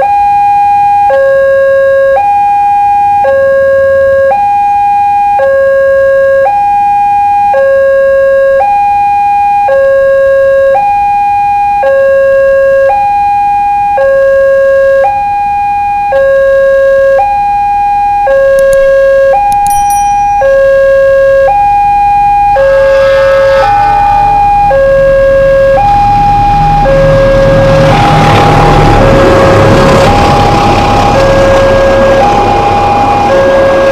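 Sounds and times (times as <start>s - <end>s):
level crossing two-tone alarm: 0.0s - 33.9s
train rumbling and rushing: 22.5s - 33.9s.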